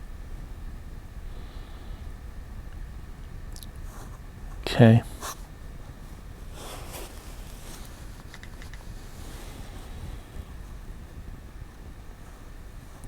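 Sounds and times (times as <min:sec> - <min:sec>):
steady low hiss: 0:00.0 - 0:13.0
soft rustle: 0:03.7 - 0:13.0
light clicks: 0:07.8 - 0:08.9.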